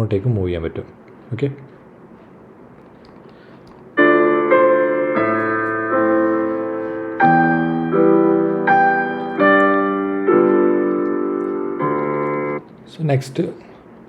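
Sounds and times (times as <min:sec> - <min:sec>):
piano chords: 0:03.9 - 0:13.2.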